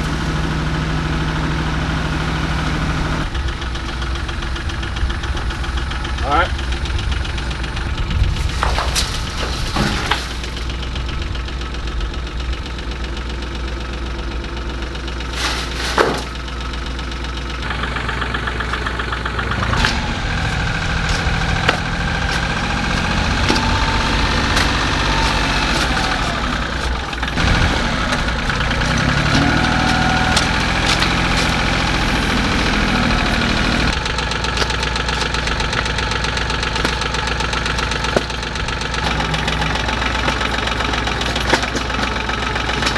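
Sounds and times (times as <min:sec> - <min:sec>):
digger engine running: 0:00.0 - 0:42.9
sharp knocks: 0:19.7 - 0:34.0.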